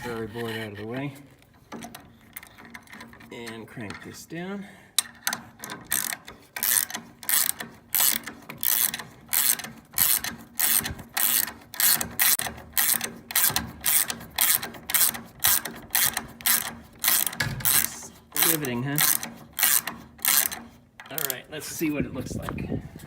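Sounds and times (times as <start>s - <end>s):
ratchet wrench clicking: 5.0s - 21.4s.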